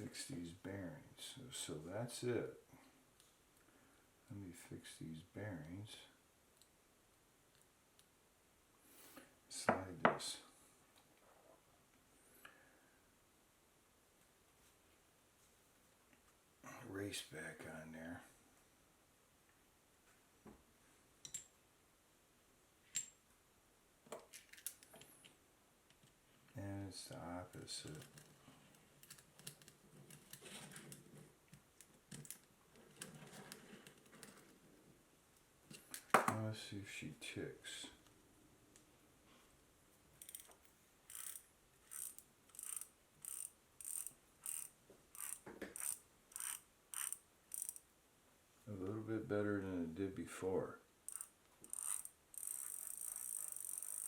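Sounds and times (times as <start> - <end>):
bicycle freewheel clicking: 41.1 - 47.8, 51.1 - 54.0.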